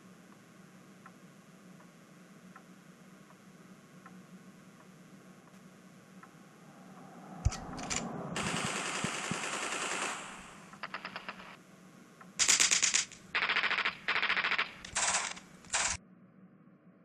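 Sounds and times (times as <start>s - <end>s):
machine-gun bursts: 7.5s - 11.6s, 12.4s - 16.0s
hiss: 8.4s - 10.8s, 14.9s - 16.0s.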